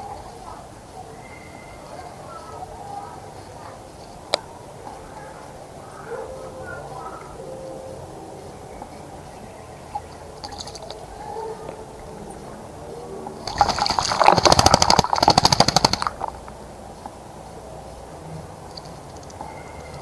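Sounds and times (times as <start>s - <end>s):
bird splashing in water: 13.4s - 16.5s.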